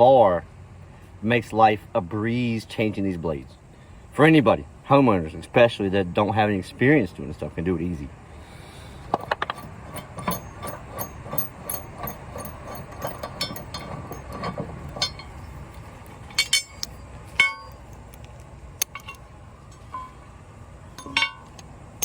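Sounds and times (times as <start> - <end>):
metal tool clicks: 9.1 - 19.2
sharp metal clinks: 9.9 - 18.0, 21.0 - 22.0.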